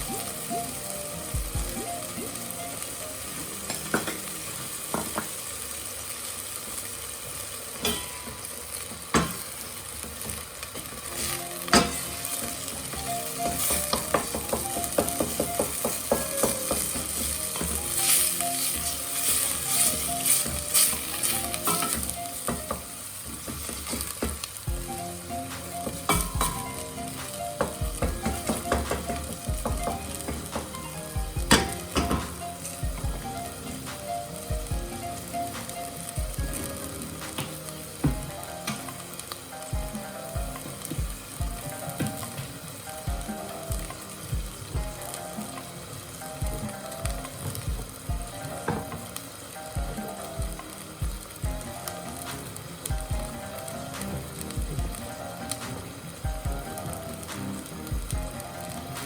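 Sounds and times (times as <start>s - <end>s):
meat sizzling in a pan: 0.0s - 59.0s
utensil scraping a pan: 11.0s - 24.3s.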